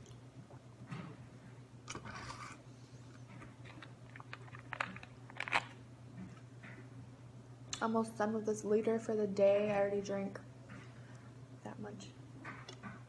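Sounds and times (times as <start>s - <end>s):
steady low hum: 0.0s - 13.0s.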